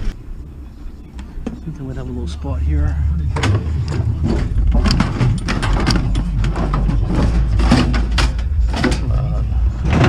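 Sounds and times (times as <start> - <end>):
steady low rumble: 0.0 - 10.0
scrap clattering and scraping: 2.6 - 10.0.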